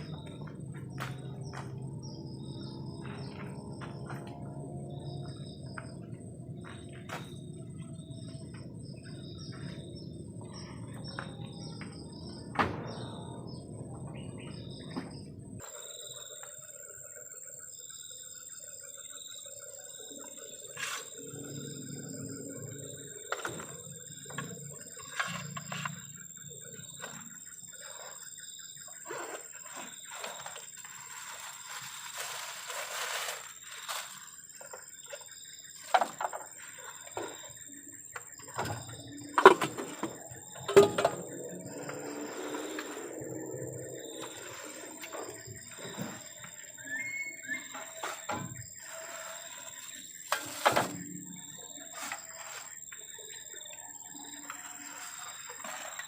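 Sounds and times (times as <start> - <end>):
crickets chirping: 0.0 - 56.0
noisy rustle: 30.1 - 34.5.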